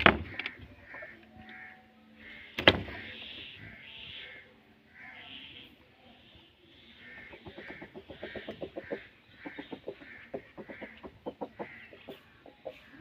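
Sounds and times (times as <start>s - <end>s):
chickens clucking: 0.0s - 4.3s, 6.3s - 13.0s.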